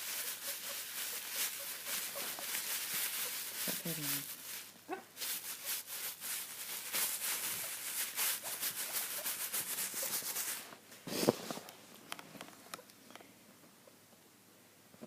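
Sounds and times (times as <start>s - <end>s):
hand rubbing animal fur: 0.0s - 11.6s.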